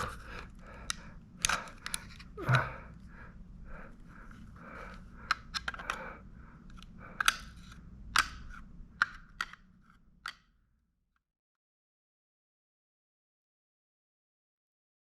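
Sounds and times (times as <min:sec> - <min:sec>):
plastic parts clicking and snapping: 0:00.0 - 0:02.7, 0:04.8 - 0:10.6.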